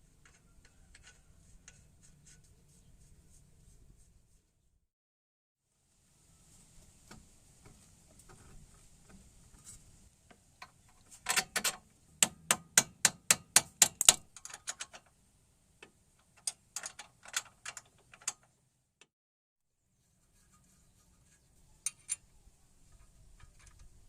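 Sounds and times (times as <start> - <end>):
hand tool clicks and knocks: 10.6 - 15.1.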